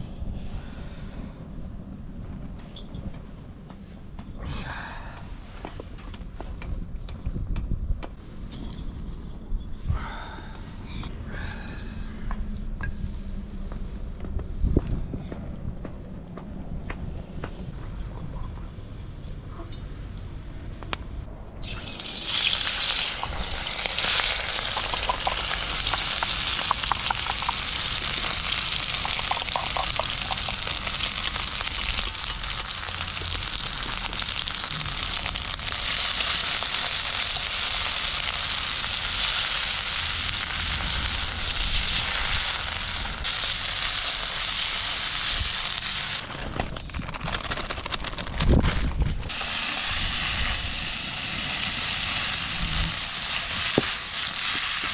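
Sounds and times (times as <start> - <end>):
food sizzling in a wok: 21.6 - 46.2, 49.3 - 54.9.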